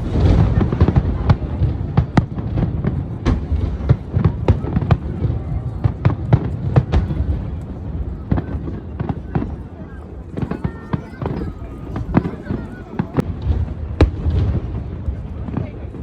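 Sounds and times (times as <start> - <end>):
fireworks bangs and crackles: 0.0 - 16.0.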